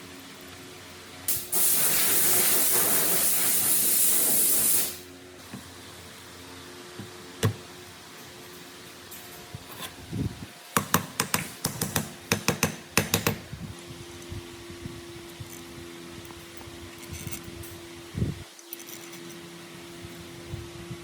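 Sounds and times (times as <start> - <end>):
sharp clicks and knocks: 10.8 - 13.4.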